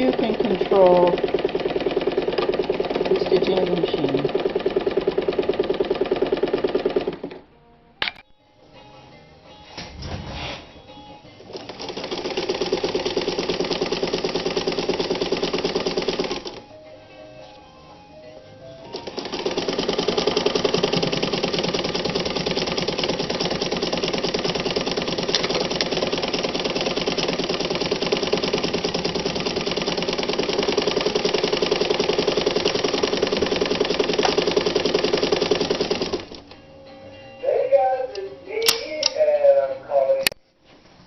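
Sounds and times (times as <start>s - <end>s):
sewing machine stitching: 0.0s - 7.4s, 11.5s - 16.6s, 18.8s - 36.4s.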